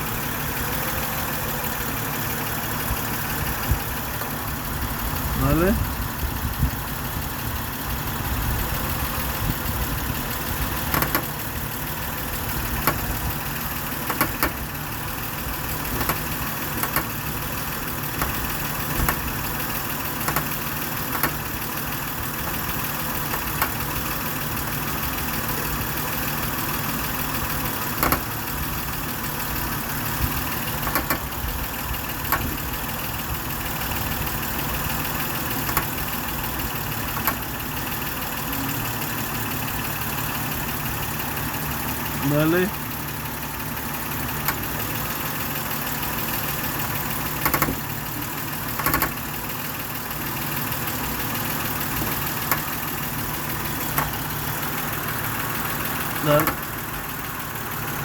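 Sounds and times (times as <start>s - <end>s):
car engine idling: 0.0s - 58.0s
sharp knocks or clicks: 10.9s - 11.3s, 12.8s - 13.0s, 14.0s - 14.6s, 16.0s - 16.2s, 16.8s - 17.2s, 19.0s - 19.3s, 20.2s - 21.4s, 28.0s - 28.3s, 30.8s - 31.3s, 32.3s - 32.6s, 37.1s - 37.4s, 47.4s - 47.8s, 48.8s - 49.2s.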